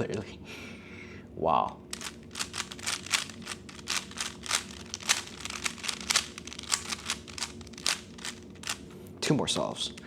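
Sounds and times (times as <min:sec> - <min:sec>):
puzzle cube layers clicking: 0:01.9 - 0:08.8.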